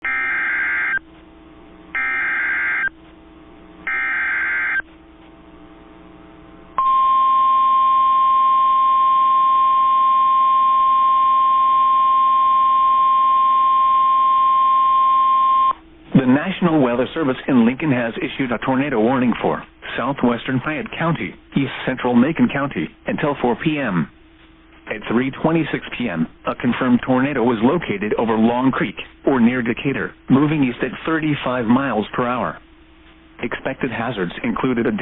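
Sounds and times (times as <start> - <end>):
steady warning alarm tone: 0.0 - 1.0, 1.9 - 3.0, 3.8 - 4.9, 6.8 - 15.8
buzzy data bursts: 1.9 - 2.9, 3.8 - 4.8.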